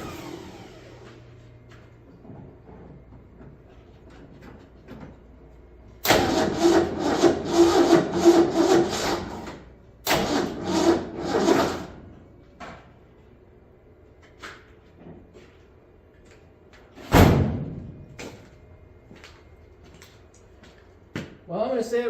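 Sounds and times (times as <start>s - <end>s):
engine cranking on starter: 0.0s - 1.3s, 6.0s - 12.0s.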